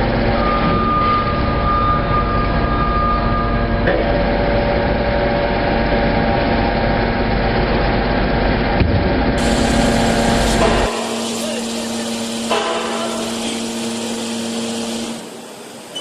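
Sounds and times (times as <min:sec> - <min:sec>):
hydraulic whine: 0:00.0 - 0:06.2, 0:09.3 - 0:16.0
scrap baler machine noise: 0:09.3 - 0:16.0.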